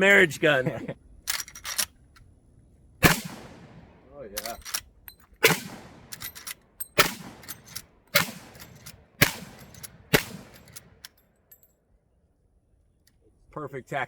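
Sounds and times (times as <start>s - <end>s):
rifle lever clicks: 1.3s - 2.3s, 4.4s - 5.4s, 6.1s - 11.2s
rifle shots with echo: 3.0s - 4.6s, 5.4s - 6.4s, 7.0s - 11.0s.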